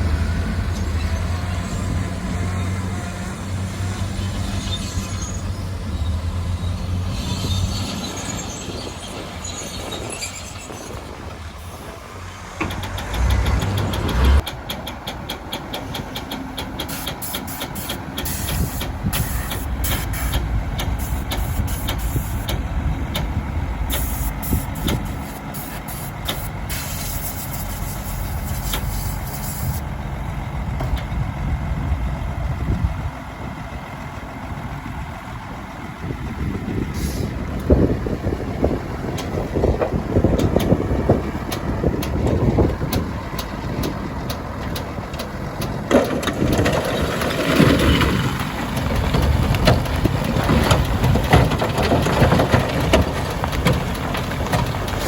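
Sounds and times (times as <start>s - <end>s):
diesel machinery engine rumbling: 0.0s - 55.0s
rapid clicks and clanks: 12.6s - 23.3s, 39.2s - 55.0s.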